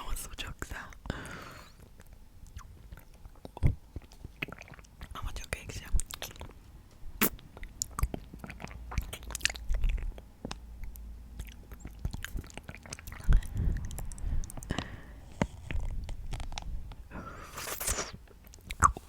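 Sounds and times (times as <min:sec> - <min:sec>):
wet mouth sounds: 0:00.9 - 0:06.6, 0:07.2 - 0:19.0
crunchy snack chewing: 0:07.2 - 0:16.7, 0:17.3 - 0:19.0.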